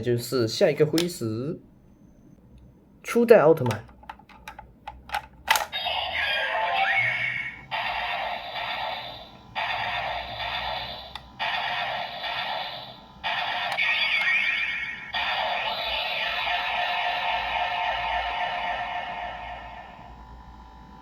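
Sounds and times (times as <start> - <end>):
toy click: 3.6 - 5.9
toy electronic sound effects: 5.6 - 20.0.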